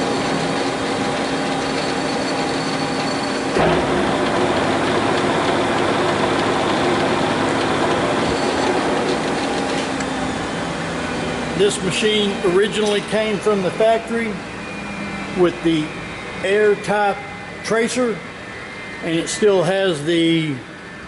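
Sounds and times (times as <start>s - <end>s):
lathe machine hum: 0.0s - 21.0s
low machine rumble: 0.0s - 21.0s
machine clunk: 3.5s - 6.5s.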